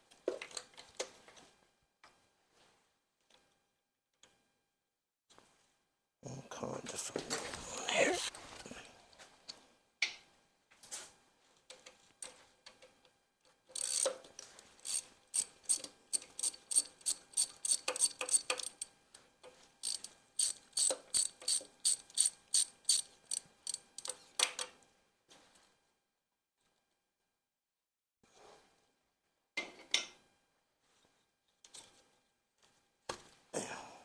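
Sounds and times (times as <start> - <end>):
ratchet wrench clicking: 13.8 - 14.2, 14.8 - 18.9, 19.8 - 24.2.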